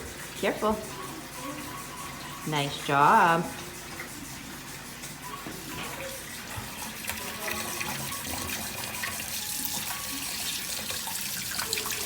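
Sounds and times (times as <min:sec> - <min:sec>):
soapy hands washing: 0:00.0 - 0:12.0
tap water running into sink: 0:05.4 - 0:12.0.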